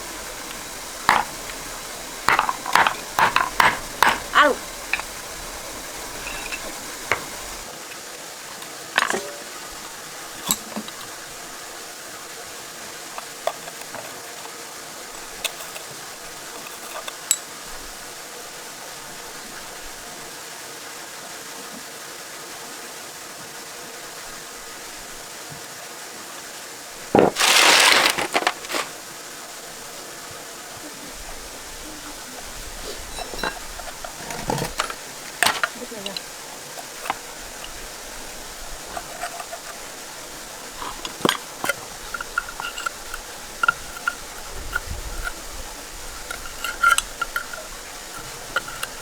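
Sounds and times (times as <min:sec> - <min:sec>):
metallic clinks of tools: 0:06.0 - 0:07.6.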